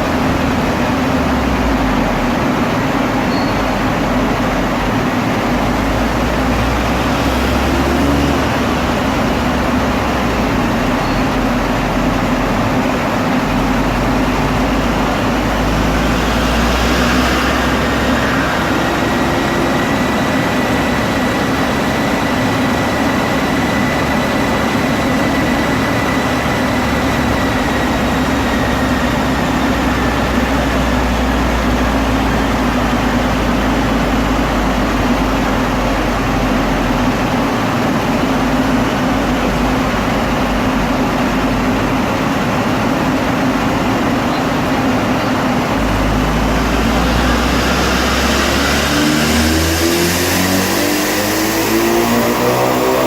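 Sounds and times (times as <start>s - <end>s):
car engine on rolling road: 0.0s - 53.0s
faint whine: 44.2s - 53.0s.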